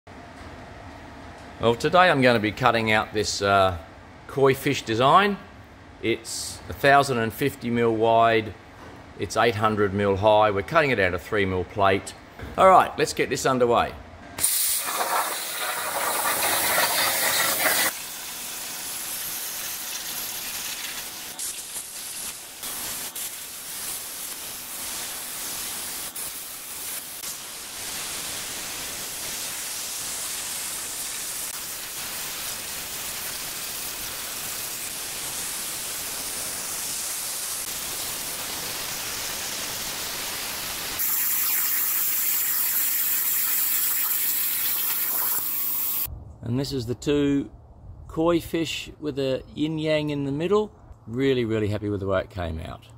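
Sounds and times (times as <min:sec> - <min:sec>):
plasma torch hissing: 0:14.4 - 0:46.1.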